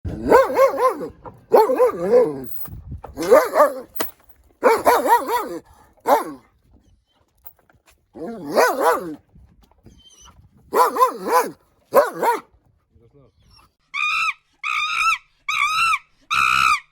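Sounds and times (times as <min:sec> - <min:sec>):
dog yapping: 0:00.2 - 0:02.5, 0:03.2 - 0:04.0, 0:04.6 - 0:06.4, 0:08.2 - 0:09.2, 0:10.7 - 0:12.4.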